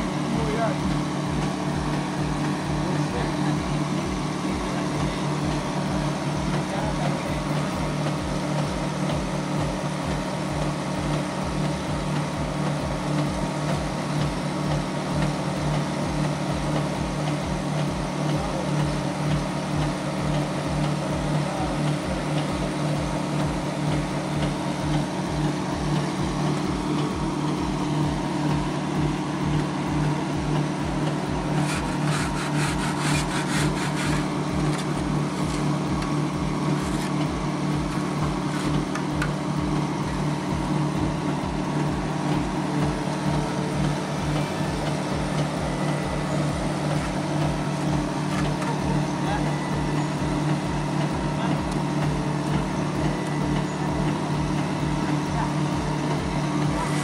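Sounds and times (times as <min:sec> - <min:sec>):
concrete pump engine pulsing: 0:00.0 - 0:57.0.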